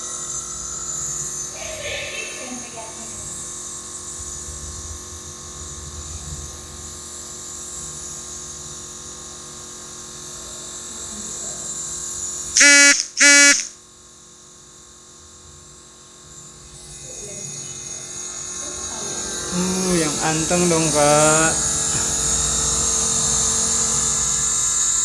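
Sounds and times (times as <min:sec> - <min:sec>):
compressor buzz and hiss: 0:12.6 - 0:13.7
short high-pitched sounds: 0:12.6 - 0:13.7.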